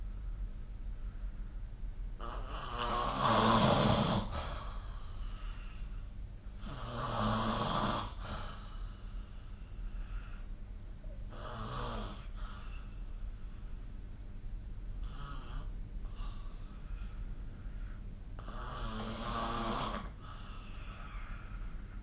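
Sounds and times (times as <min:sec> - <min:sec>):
steady low hum: 0:00.0 - 0:22.0
person snoring: 0:02.2 - 0:05.5, 0:06.6 - 0:08.8, 0:11.3 - 0:12.9, 0:15.0 - 0:16.7, 0:18.4 - 0:21.4.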